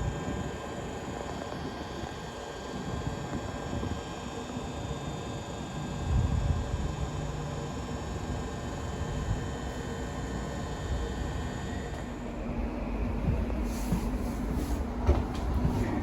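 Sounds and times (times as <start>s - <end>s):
train wheels rumbling on track: 11.8s - 16.0s.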